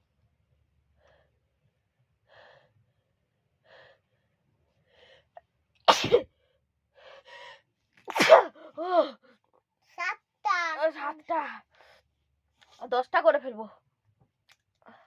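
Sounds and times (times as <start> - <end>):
faint catching breaths: 2.2 - 5.4
woman sneezing: 5.9 - 6.3, 8.1 - 8.6.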